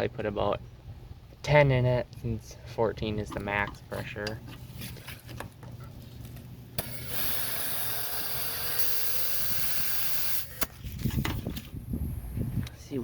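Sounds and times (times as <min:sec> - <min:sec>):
compressed air hissing into tire: 0:06.8 - 0:10.8.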